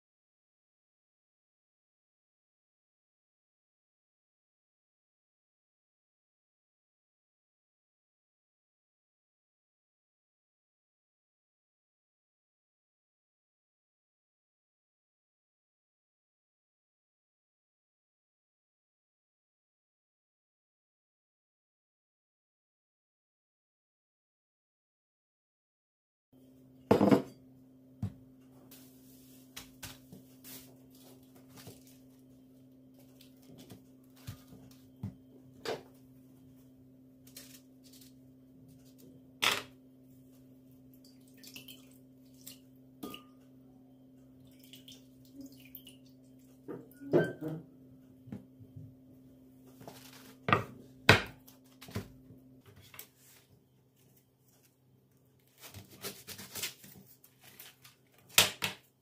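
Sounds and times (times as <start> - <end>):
dishes and utensils clinking: 46.7 - 47.6.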